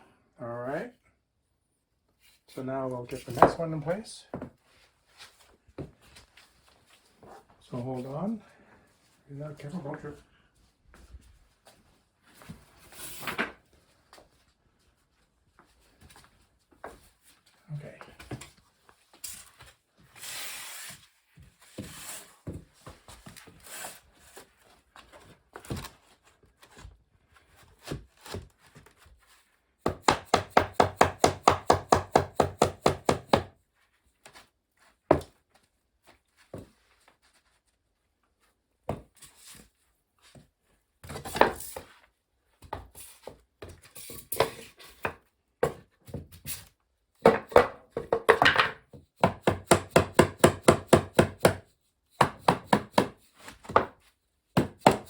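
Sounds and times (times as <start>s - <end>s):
wooden tiles knocking: 47.2s - 51.6s.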